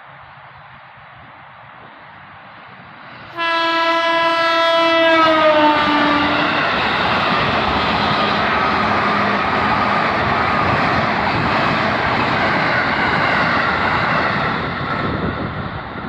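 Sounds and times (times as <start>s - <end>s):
rush of passing train: 0.0s - 16.0s
train horn blast: 3.3s - 7.0s.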